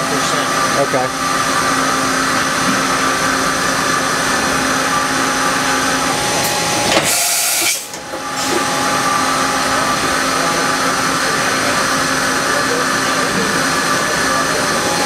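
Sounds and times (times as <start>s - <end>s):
machining center mechanical hum: 0.0s - 15.0s
loud burst of air hiss: 7.0s - 7.9s.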